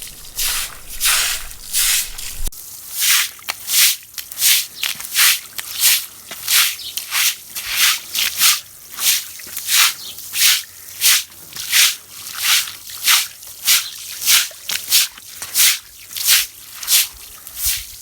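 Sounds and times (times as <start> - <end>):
stiff brush scrubbing wet rug: 0.0 - 6.7.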